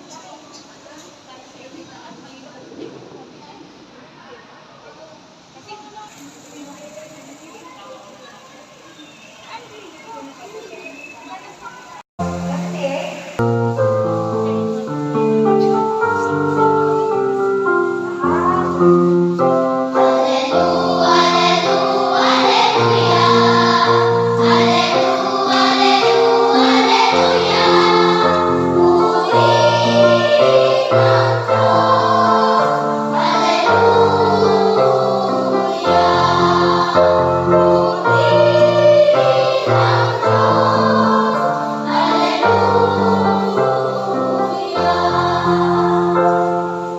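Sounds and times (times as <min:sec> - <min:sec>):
choir singing held chords: 0:12.2 - 0:46.9.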